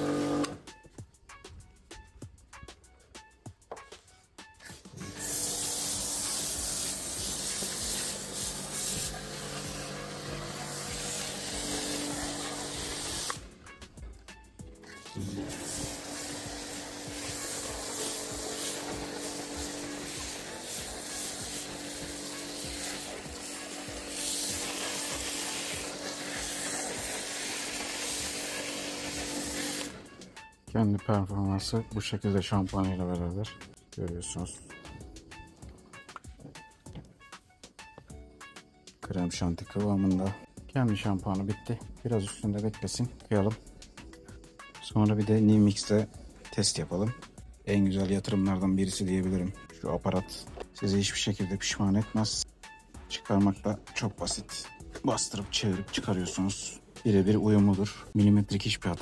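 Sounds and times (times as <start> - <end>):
pressure washer spraying foam: 0.0 - 0.6, 4.7 - 13.8, 14.8 - 30.3
pump humming: 0.0 - 0.6, 5.0 - 13.5, 15.0 - 30.1.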